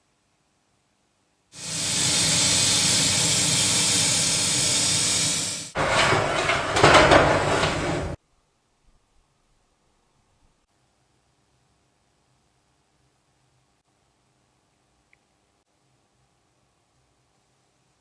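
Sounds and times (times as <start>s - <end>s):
workshop tool hissing and humming: 1.6s - 8.2s.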